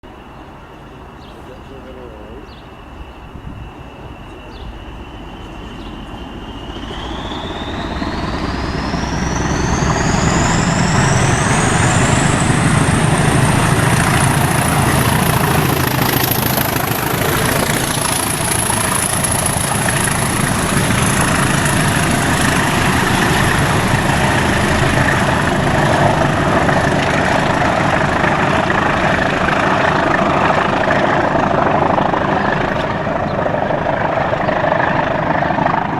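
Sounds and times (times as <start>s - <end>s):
diesel locomotive engines: 0.0s - 35.9s
high turbocharger whistles: 3.1s - 25.6s.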